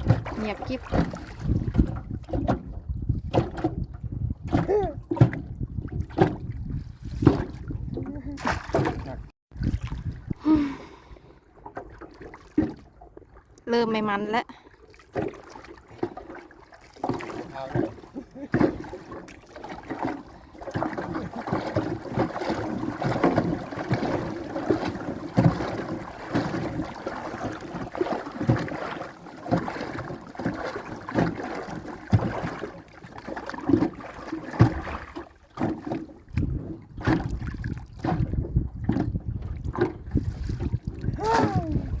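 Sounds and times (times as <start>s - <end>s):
knocks and clatter on boat: 0.0s - 10.3s, 11.6s - 14.2s, 15.0s - 42.0s
wind rumbling on microphone: 0.0s - 11.2s, 36.2s - 42.0s
water sounds: 0.0s - 42.0s.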